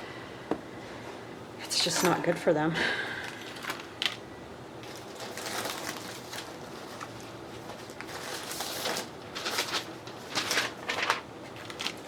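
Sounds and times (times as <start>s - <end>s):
paper rustling: 4.8s - 12.0s.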